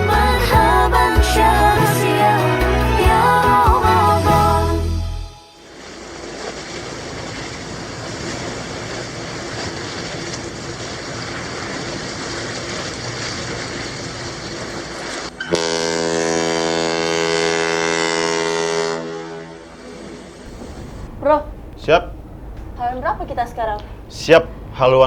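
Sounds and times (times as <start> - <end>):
ship's horn blast: 3.5 - 5.8, 15.4 - 24.7
ship rushing noise: 20.5 - 25.0.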